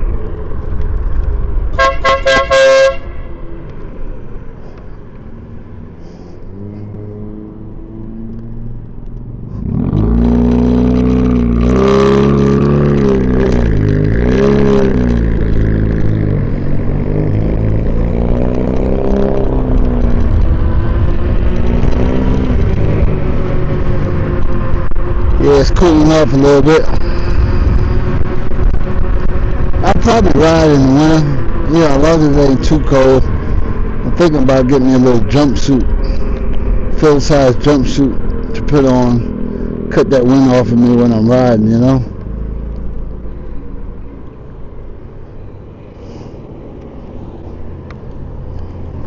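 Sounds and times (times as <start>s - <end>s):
road and wind rumble: 0.0s - 49.0s
vehicle engine: 0.0s - 49.0s
electric air horn blast: 1.7s - 3.4s.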